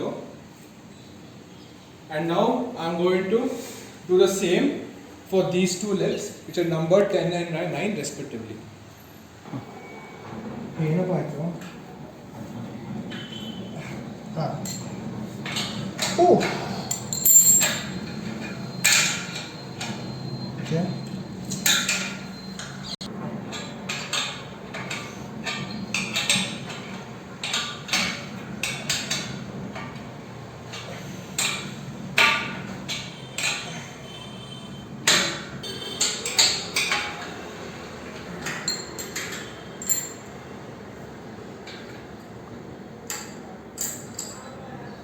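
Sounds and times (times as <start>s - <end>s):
metal parts clinking: 14.6s - 20.0s, 38.4s - 40.3s.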